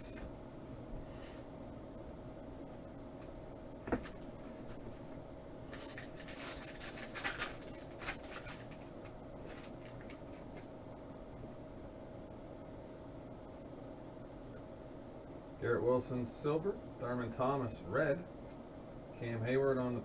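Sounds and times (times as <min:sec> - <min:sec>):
cards sliding and rustling: 0:05.7 - 0:10.7.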